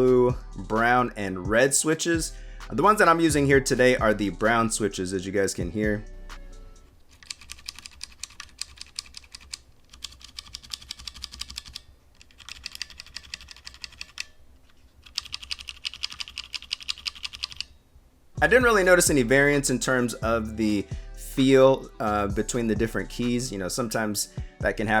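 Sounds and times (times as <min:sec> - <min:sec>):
mechanical keyboard typing: 0:07.2 - 0:14.3, 0:15.0 - 0:17.7.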